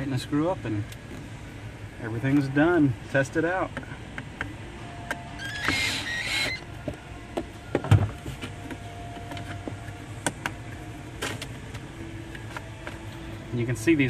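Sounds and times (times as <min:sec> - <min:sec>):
steady low hum: 0:00.0 - 0:14.0
knob squeaky scrape: 0:05.4 - 0:06.7.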